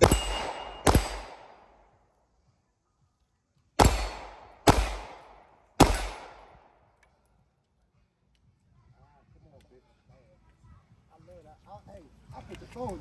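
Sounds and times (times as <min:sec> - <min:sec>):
gunshots: 0:00.0 - 0:01.8, 0:03.8 - 0:06.7.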